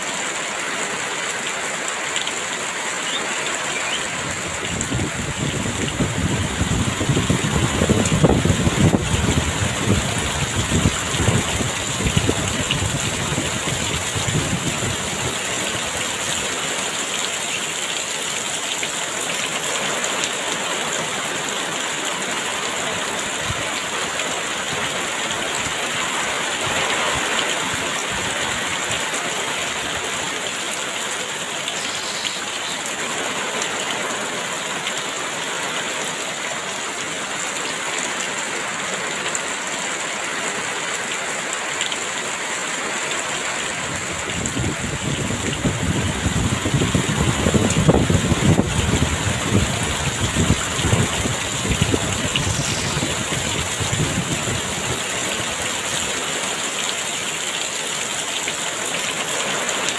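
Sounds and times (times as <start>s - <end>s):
heavy rain falling: 0.0s - 59.9s
low wind rumble: 44.0s - 55.1s.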